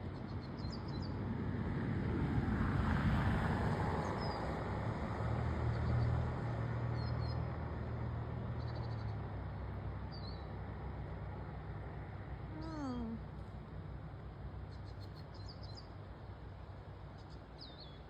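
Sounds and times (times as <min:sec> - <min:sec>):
outdoor noise: 0:00.0 - 0:18.0
faint bird chirps: 0:14.7 - 0:16.0.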